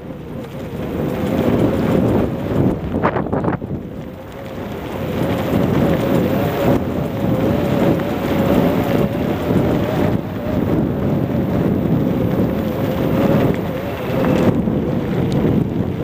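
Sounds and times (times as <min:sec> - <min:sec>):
thin wavering whine: 0:00.0 - 0:15.2
rumble and rattle from rough ground: 0:00.0 - 0:16.0
wind buffeting microphone: 0:00.0 - 0:16.0.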